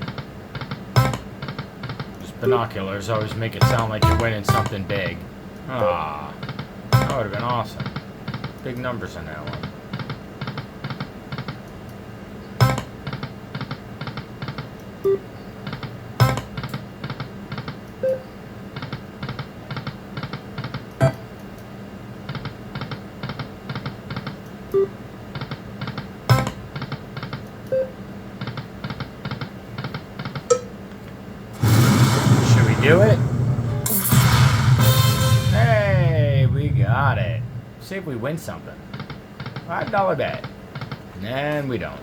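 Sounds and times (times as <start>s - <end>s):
slot machine reels ticking: 3.4s - 5.1s
slot machine sharp click: 3.6s - 4.9s, 33.8s - 35.8s.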